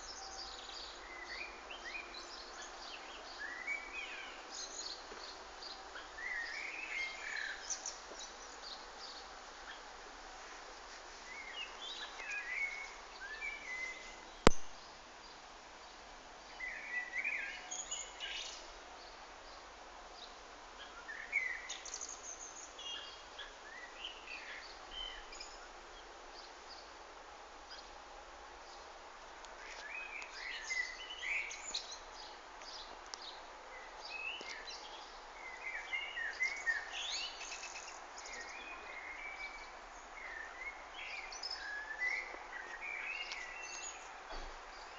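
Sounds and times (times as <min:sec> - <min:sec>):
faint steady hiss: 0:00.0 - 0:44.9
songbirds chirping: 0:00.0 - 0:44.9
sharp click: 0:14.5 - 0:14.7.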